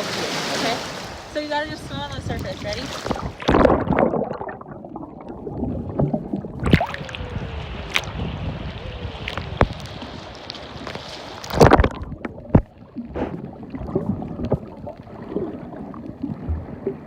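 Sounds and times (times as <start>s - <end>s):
sea water splashing: 0.0s - 17.0s
loud splash: 2.8s - 8.3s, 11.1s - 13.4s
underwater gurgling and bubbling: 3.0s - 17.0s.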